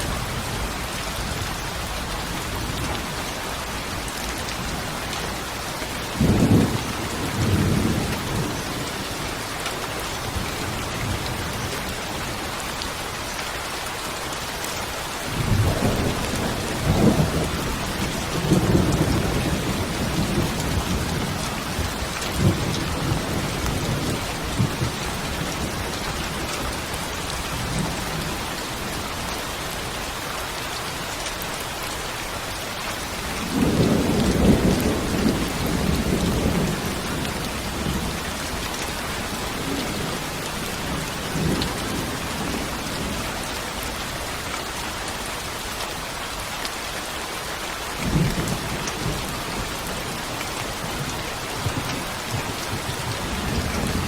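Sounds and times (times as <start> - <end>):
steady rain hissing: 0.0 - 54.0
thunder rumbling: 15.3 - 29.0, 33.4 - 44.2, 48.0 - 54.0.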